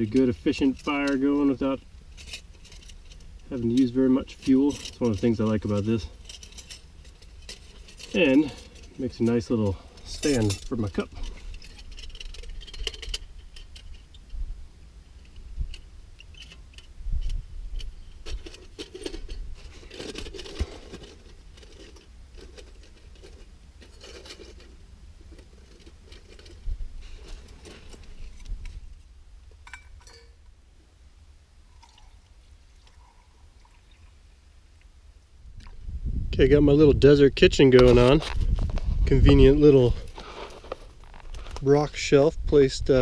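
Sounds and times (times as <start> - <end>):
metal camp stove clinking: 0.0 - 14.4, 15.2 - 28.8, 29.5 - 30.5
wind rumbling on microphone: 16.9 - 18.6, 26.5 - 27.2, 35.4 - 40.2, 40.9 - 43.0.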